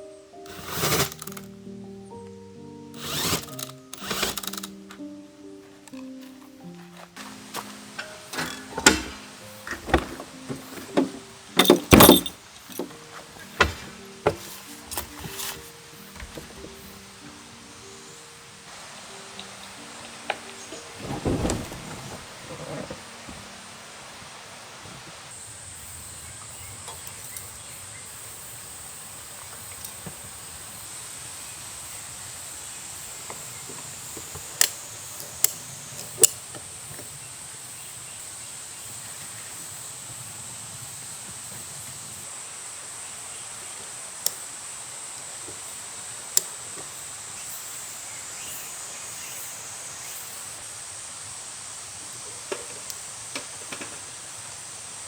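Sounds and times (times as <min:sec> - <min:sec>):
insects chirring: 0:00.0 - 0:55.0
sharp clicks or knocks: 0:08.0 - 0:15.4.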